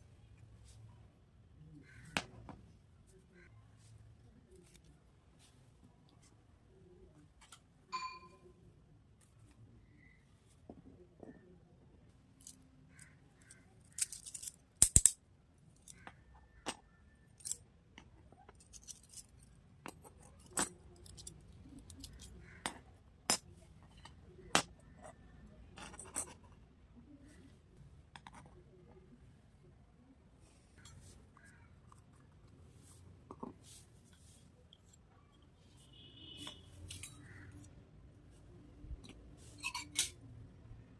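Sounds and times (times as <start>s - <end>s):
plastic toy pieces clicking: 13.5s - 15.2s.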